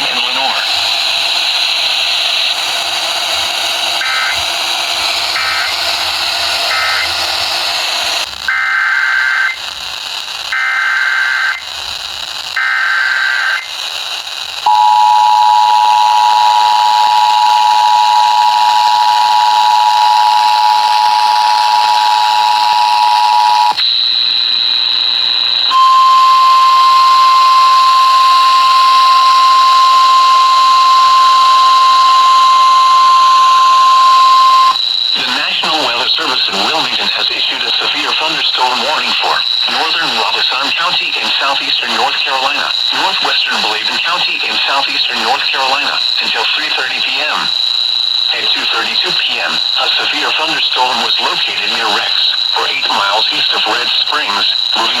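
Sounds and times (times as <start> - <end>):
radio hiss: 0.0 - 8.3, 15.7 - 23.9, 25.0 - 55.0
buzzy data bursts: 0.0 - 8.7, 15.7 - 55.0
single-tone warning alarm: 3.2 - 7.3, 8.5 - 9.6, 10.5 - 11.6, 12.6 - 13.7, 14.6 - 55.0
two-tone attention signal: 14.7 - 24.7, 25.7 - 36.9.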